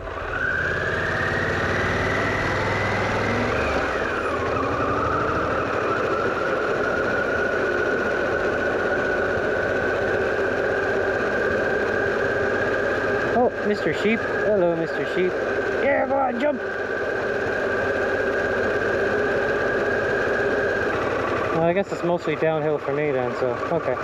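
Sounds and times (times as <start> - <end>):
motorcycle engine drone: 0.0 - 24.0
whining tone: 0.0 - 24.0.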